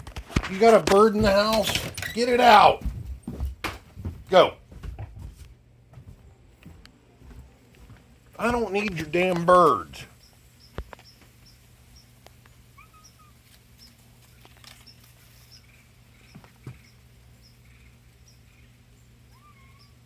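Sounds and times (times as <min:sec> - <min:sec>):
small bird chirping: 0:10.1 - 0:20.0.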